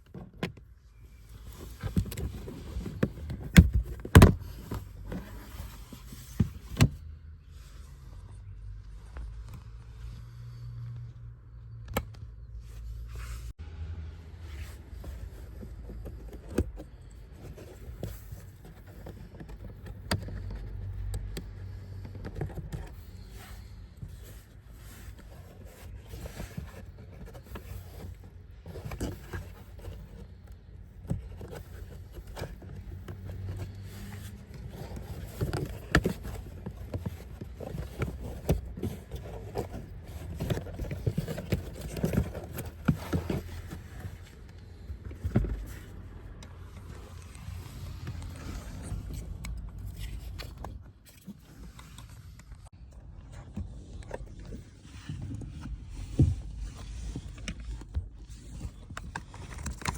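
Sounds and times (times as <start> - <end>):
hands clicking and scraping on plastic: 56.9 - 59.9.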